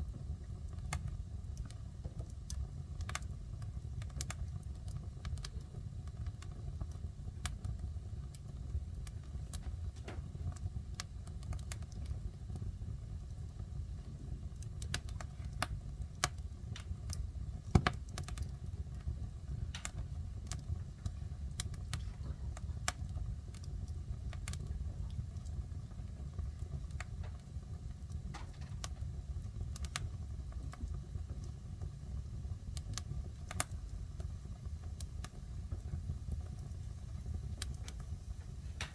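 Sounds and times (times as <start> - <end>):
fire low rumble: 0.0 - 38.9
wood fire crackling and popping: 0.0 - 38.9.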